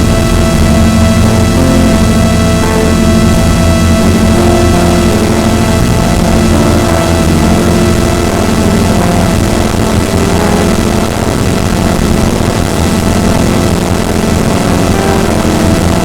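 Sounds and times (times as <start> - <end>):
faint held synth tones: 0.0 - 16.0
hissing noise: 0.0 - 16.0
synthesizer rumbling drone: 0.0 - 16.0.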